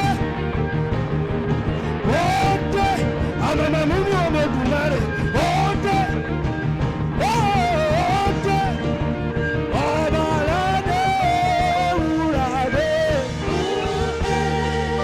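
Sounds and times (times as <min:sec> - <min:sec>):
backing band with bass: 0:00.0 - 0:15.0
saxophone melody: 0:13.2 - 0:15.0.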